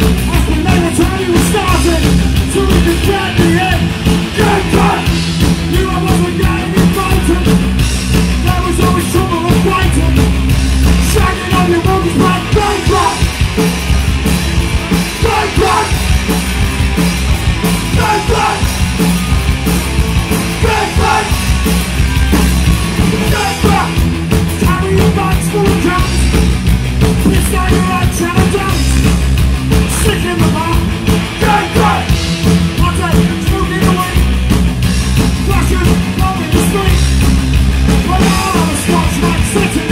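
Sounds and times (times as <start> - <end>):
punk rock band playing live: 0.0 - 39.9
person shouting vocals: 15.2 - 16.0, 18.0 - 18.7.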